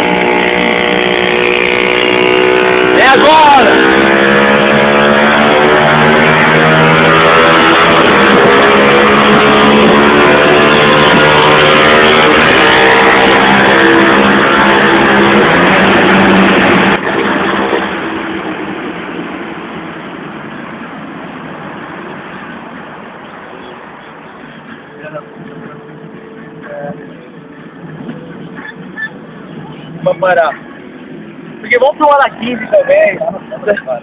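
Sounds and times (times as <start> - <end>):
motorcycle engine running: 0.0 - 6.8.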